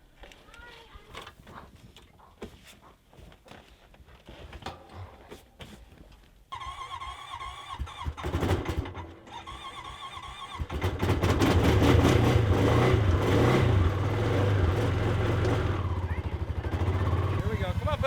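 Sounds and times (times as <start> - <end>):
engine starter cranking: 6.5 - 13.1
engine running low rumble: 10.8 - 18.0.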